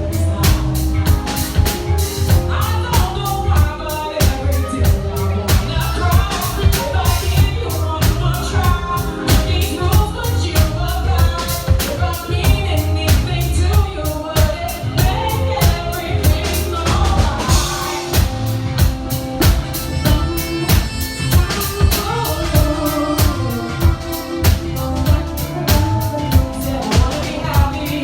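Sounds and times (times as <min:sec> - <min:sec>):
live band playing: 0:00.0 - 0:28.0
person singing: 0:00.0 - 0:28.0.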